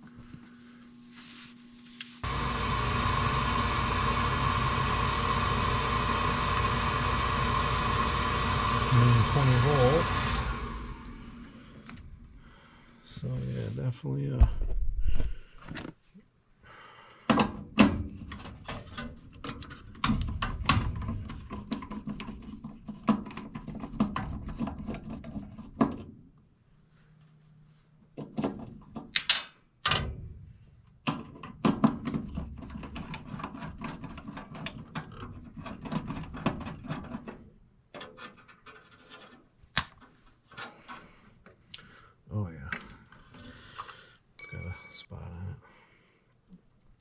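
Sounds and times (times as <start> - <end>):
tools clicking and knocking on metal: 31.0 - 41.0.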